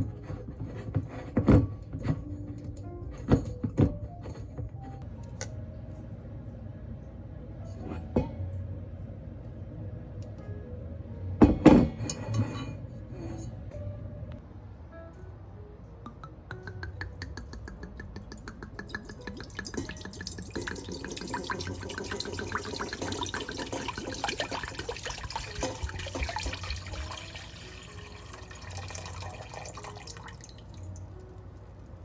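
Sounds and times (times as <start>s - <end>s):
patter of drips: 16.2s - 31.4s
water running and splashing: 18.9s - 30.5s.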